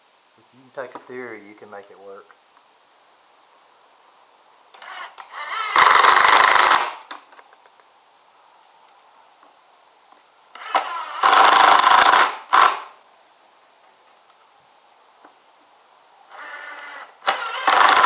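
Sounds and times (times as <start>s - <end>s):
power drill running: 4.8s - 7.0s, 10.5s - 12.9s, 16.3s - 18.0s.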